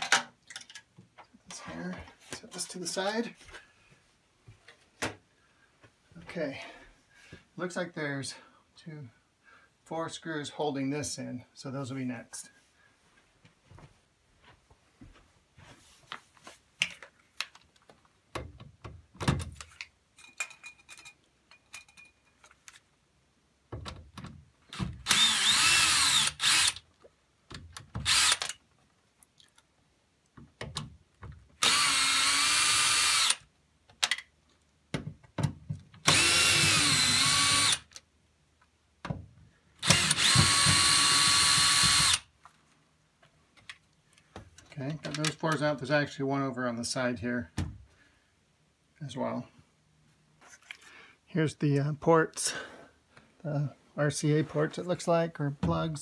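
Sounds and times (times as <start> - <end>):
cordless drill whining: 24.7 - 26.8, 28.0 - 28.6, 31.6 - 33.4, 36.0 - 37.9, 39.8 - 42.3.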